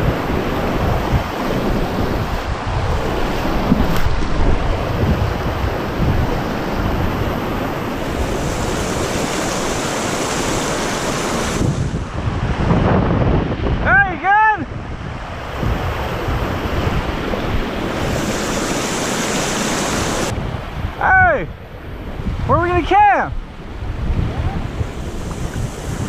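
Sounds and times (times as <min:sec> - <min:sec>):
wind buffeting microphone: 0:00.0 - 0:26.0
high hiss: 0:17.9 - 0:20.3.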